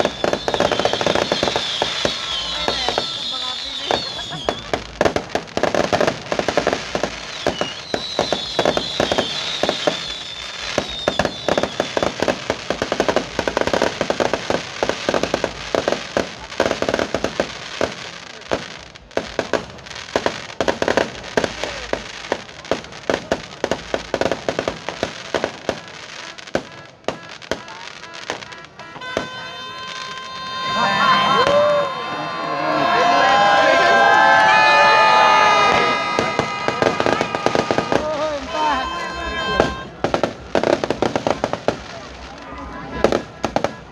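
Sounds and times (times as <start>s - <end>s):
firework whistles: 0.0s - 15.6s, 27.1s - 42.2s
fireworks popping and crackling: 0.0s - 43.9s.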